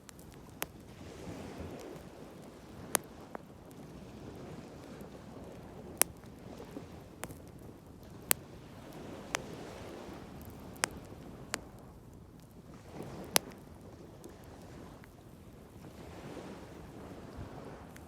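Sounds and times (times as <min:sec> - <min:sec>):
bonfire crackling: 0:00.0 - 0:17.8
sharp fire pops: 0:05.6 - 0:13.7.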